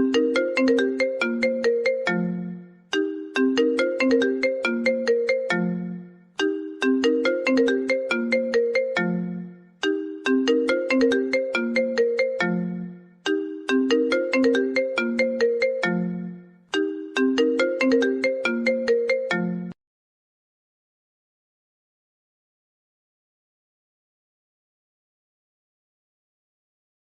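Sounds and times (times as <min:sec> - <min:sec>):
phone ringtone: 0:00.0 - 0:19.8.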